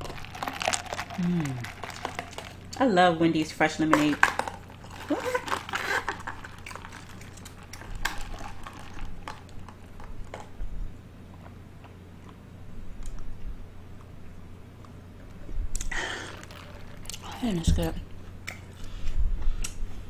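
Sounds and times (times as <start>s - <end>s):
person chewing: 0.0s - 2.8s, 4.2s - 10.6s, 15.7s - 17.5s.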